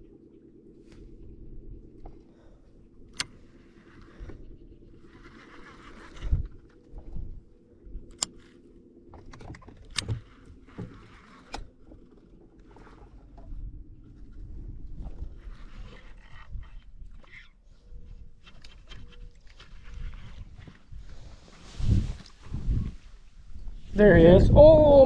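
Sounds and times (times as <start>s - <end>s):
low steady hum: 0.0s - 25.0s
knocks and clicks on boat: 7.9s - 13.7s.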